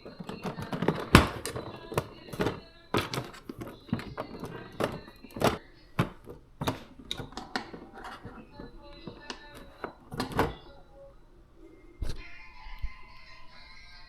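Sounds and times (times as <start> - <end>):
sharp knocks and clicks: 0.0 - 10.8.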